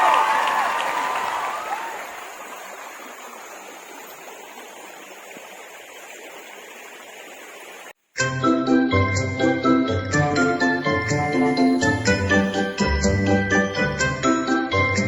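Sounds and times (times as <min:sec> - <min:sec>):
creek flowing: 0:00.0 - 0:08.0, 0:09.8 - 0:14.2
shrill chirping calls: 0:10.2 - 0:14.1.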